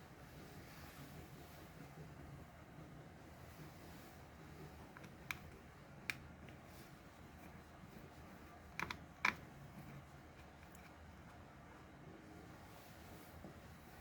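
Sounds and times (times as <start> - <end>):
faint low hum: 0.0 - 14.0
light clicks of small hard parts: 8.8 - 9.5.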